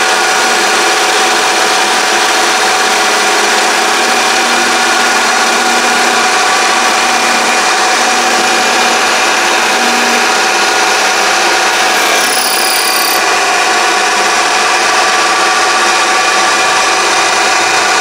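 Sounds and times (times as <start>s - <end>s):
lathe motor whine: 0.0s - 18.0s
high-pitched squeal: 3.6s - 13.4s.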